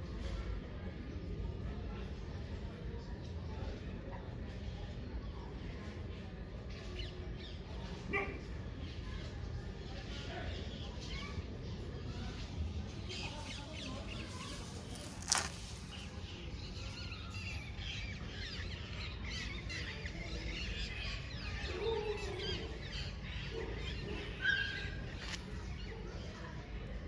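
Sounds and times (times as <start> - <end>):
birds chirping: 13.5 - 21.5, 22.4 - 26.0.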